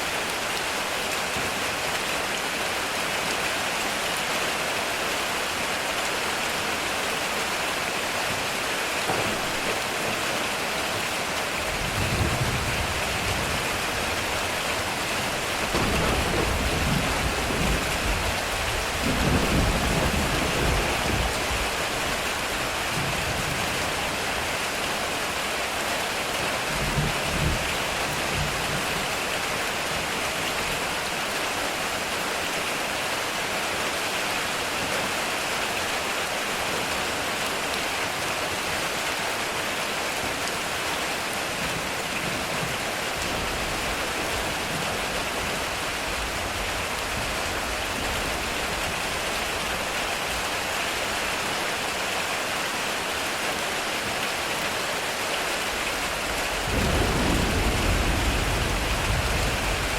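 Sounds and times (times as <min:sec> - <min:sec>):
heavy rain on a metal roof: 0:00.0 - 0:59.9
low thunder rolling: 0:15.6 - 0:21.6, 0:56.5 - 0:59.9.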